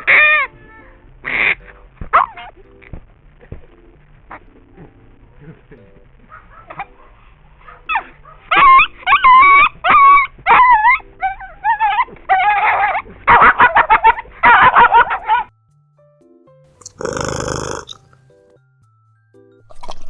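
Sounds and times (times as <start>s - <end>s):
puppy yipping: 7.7s - 11.0s, 11.6s - 15.5s
puppy whining: 16.8s - 18.1s.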